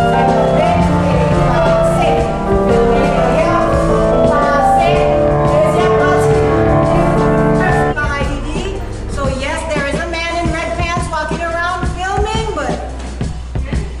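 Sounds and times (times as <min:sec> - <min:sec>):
song with sung melody and beat: 0:00.0 - 0:10.8.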